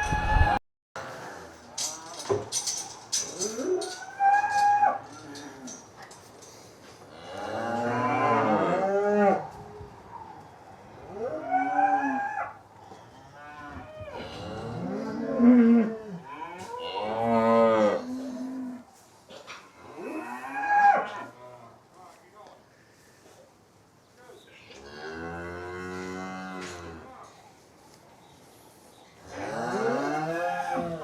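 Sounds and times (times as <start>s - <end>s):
cattle mooing: 7.1s - 9.6s, 13.1s - 18.8s, 24.8s - 27.1s, 29.3s - 31.0s.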